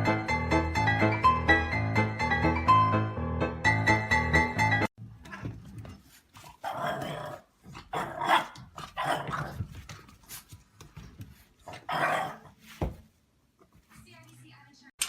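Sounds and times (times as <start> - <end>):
dog barking and growling: 5.2 - 9.7, 11.6 - 12.6.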